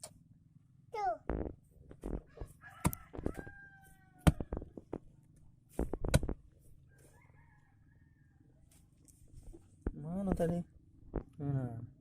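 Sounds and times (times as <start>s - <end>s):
rooster crowing: 2.3s - 4.6s, 6.9s - 8.6s.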